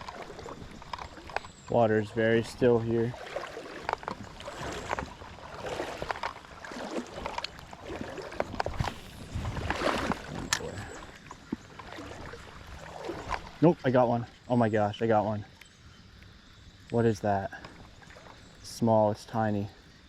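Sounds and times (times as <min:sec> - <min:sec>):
creek water splashing: 0:00.0 - 0:20.0.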